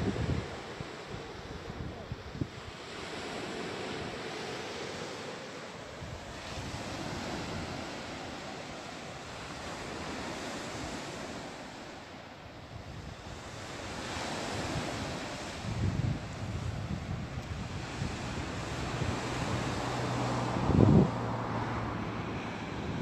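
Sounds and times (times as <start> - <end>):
wind on microphone: 0.0 - 5.2, 5.9 - 23.0
sea waves washing onto shore: 0.0 - 23.0.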